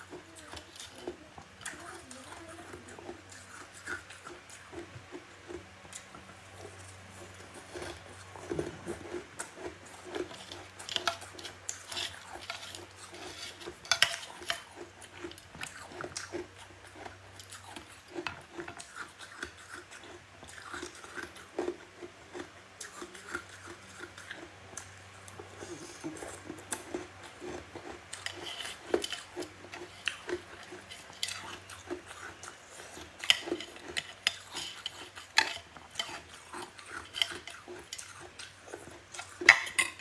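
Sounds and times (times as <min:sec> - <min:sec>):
chewing crunchy ice: 0:00.0 - 0:40.0.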